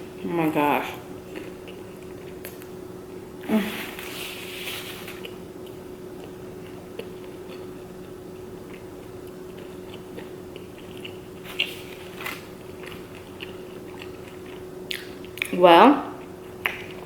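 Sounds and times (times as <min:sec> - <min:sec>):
faint steady hum: 0:00.0 - 0:17.0
person chewing food: 0:01.2 - 0:02.8, 0:05.0 - 0:15.5, 0:16.2 - 0:17.0.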